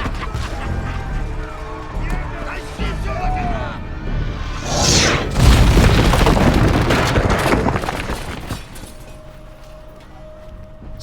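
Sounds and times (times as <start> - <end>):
rushing whoosh: 3.9 - 6.6
deep rumbling boom: 3.9 - 7.4.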